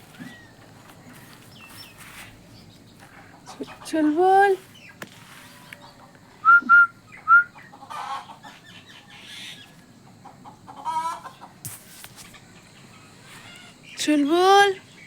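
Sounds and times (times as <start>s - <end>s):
chicken clucking: 0.1s - 13.8s.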